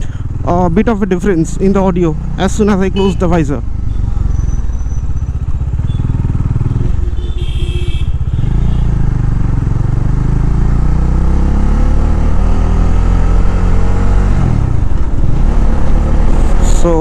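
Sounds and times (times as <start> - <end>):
motorcycle engine accelerating: 0.0 - 17.0
high-pitched tone: 2.9 - 3.5.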